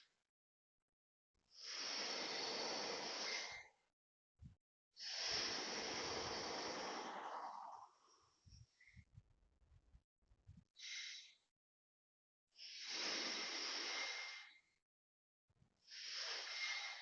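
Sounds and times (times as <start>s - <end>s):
hissing bursts with faint whistle: 15.9s - 17.0s.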